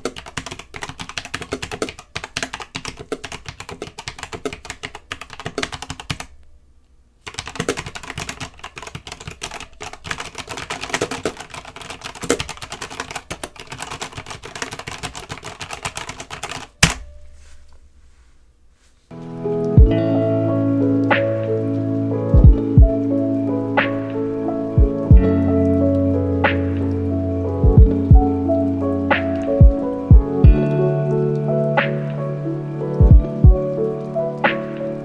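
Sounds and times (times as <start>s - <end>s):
mechanical keyboard typing: 0.0s - 6.3s, 7.2s - 17.1s.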